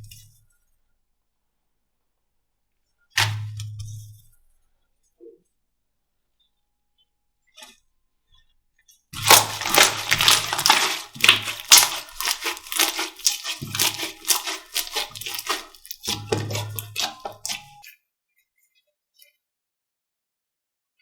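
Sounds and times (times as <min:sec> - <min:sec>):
slime squished by hand crackling: 0:09.2 - 0:17.8.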